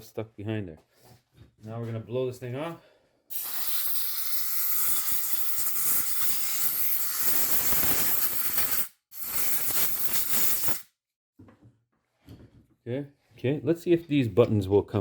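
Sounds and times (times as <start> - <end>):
compressed air hissing from blow gun: 3.3 - 10.9.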